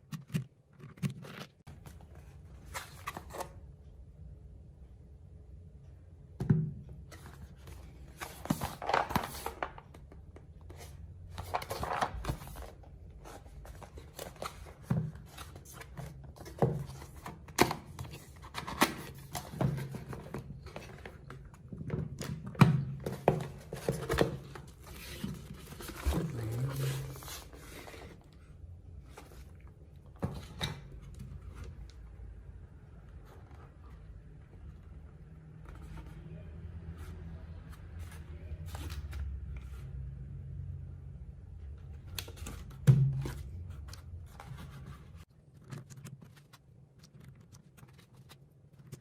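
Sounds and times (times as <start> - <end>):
cardboard and plastic rustling: 0.1 - 3.6, 7.1 - 32.0, 42.0 - 49.0.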